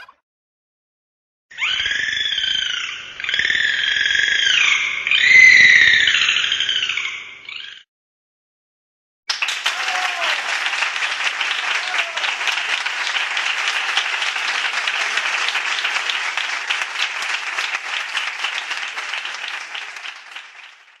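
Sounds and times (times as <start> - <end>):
crowd applauding: 9.3 - 21.0.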